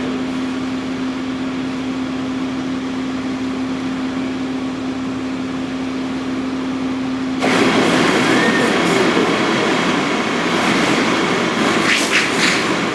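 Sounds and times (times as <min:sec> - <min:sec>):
mechanical hum: 0:00.0 - 0:12.9
loud rough noise: 0:07.4 - 0:12.9
noisy hiss: 0:07.4 - 0:12.9.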